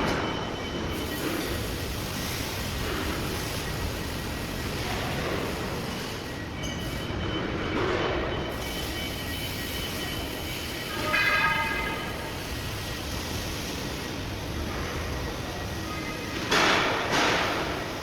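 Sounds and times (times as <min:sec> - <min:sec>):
factory machinery noise: 0:00.0 - 0:18.0
high-pitched horn-like tone: 0:10.8 - 0:12.4.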